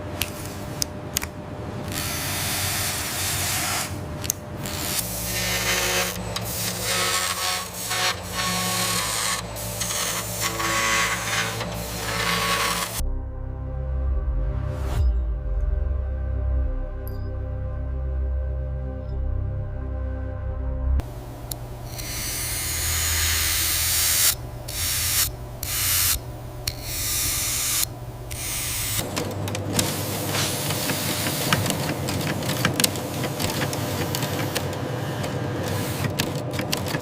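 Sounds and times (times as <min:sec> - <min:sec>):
machine clicking and scraping: 0:01.9 - 0:13.0, 0:28.3 - 0:37.0.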